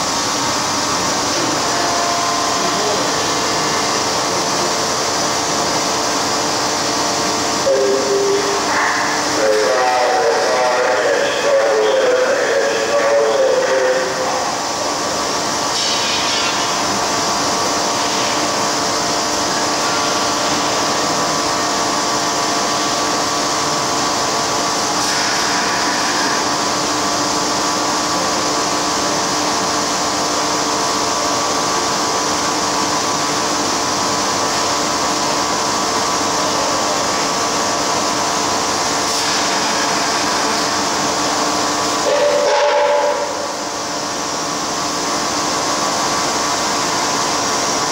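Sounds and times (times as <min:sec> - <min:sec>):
machine hums: 0:00.0 - 0:47.9
machine hissing: 0:07.4 - 0:18.7.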